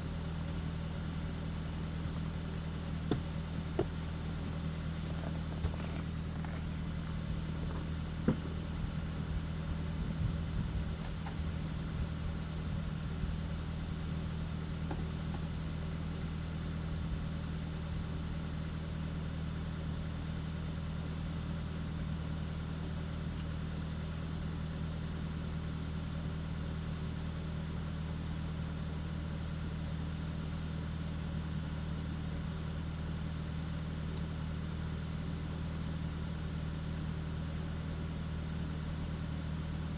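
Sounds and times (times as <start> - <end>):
light clicks and knocks: 3.1 - 6.8.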